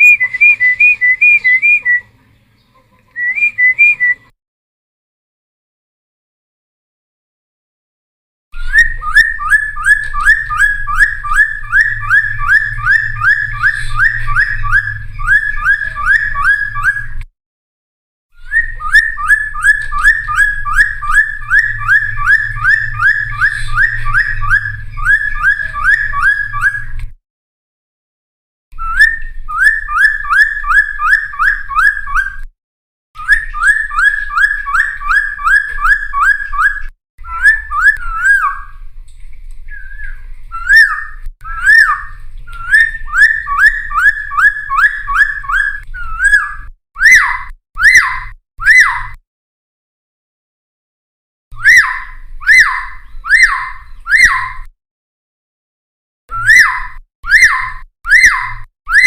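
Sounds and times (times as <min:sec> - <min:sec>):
bird whistling repeated notes: 0:00.0 - 0:02.1, 0:03.2 - 0:04.3, 0:08.6 - 0:17.2, 0:18.4 - 0:27.0, 0:28.8 - 0:32.5, 0:33.2 - 0:38.8, 0:39.7 - 0:49.2, 0:51.5 - 0:54.7, 0:56.3 - 0:59.0.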